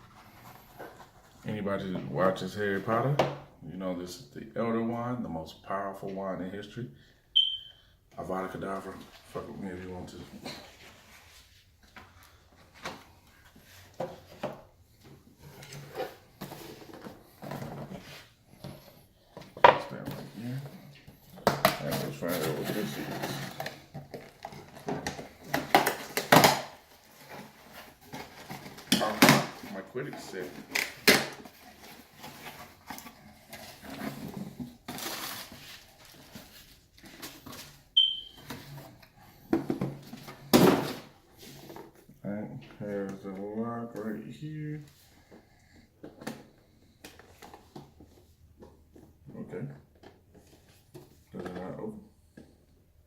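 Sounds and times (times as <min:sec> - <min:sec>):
boxes knocking and scraping: 0:15.4 - 0:37.8
soft rubbing of packaging: 0:20.2 - 0:24.8
packaging rustling: 0:21.8 - 0:37.9.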